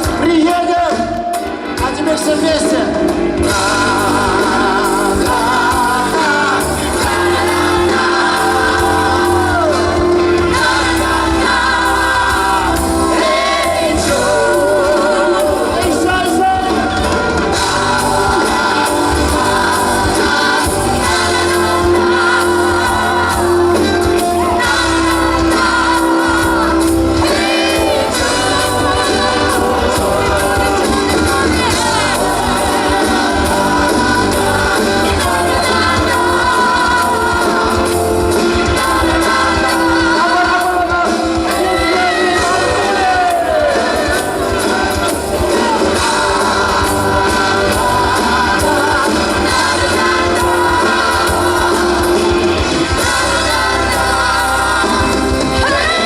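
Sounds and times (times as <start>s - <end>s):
live pop band through pa: 0.0s - 56.0s
several people singing together: 3.4s - 56.0s.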